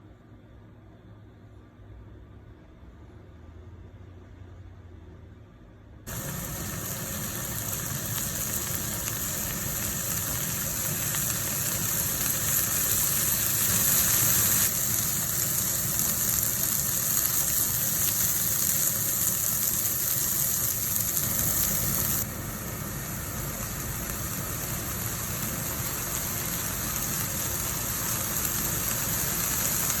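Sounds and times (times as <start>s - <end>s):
food sizzling in a pan: 6.1s - 30.0s.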